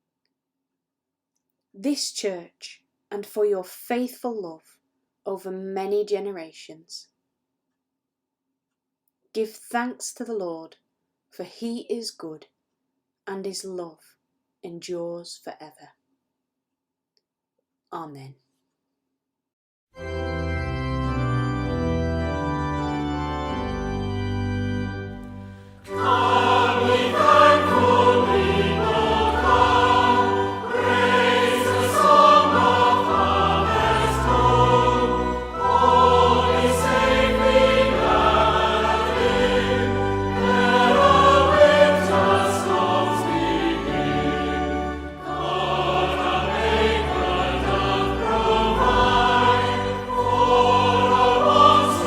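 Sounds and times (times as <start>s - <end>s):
church organ playing chords: 20.0s - 52.0s
choir singing a hymn: 24.7s - 52.0s.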